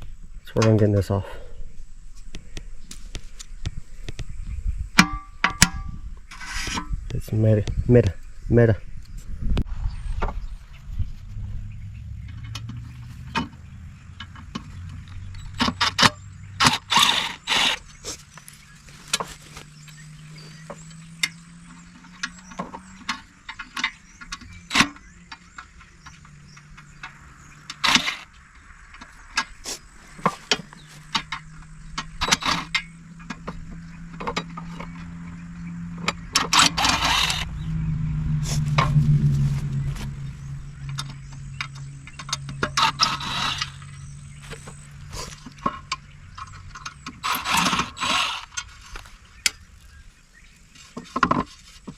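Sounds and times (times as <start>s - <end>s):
scraping bursts: 6.2s - 7.0s, 12.3s - 20.4s, 27.6s - 28.4s, 32.0s - 49.8s
hand tools on metal: 14.2s - 28.3s, 29.0s - 35.4s, 36.0s - 37.5s, 40.8s - 49.6s
low steady hum: 30.6s - 51.2s.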